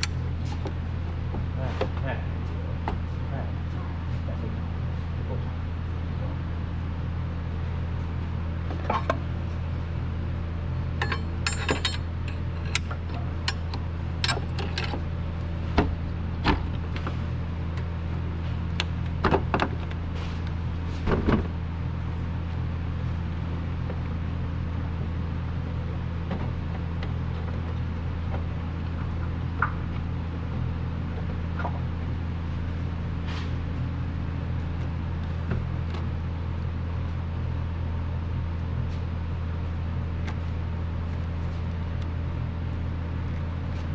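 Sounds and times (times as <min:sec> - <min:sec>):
steady low hum: 0:00.0 - 0:43.9
metal tools clinking: 0:11.0 - 0:13.6.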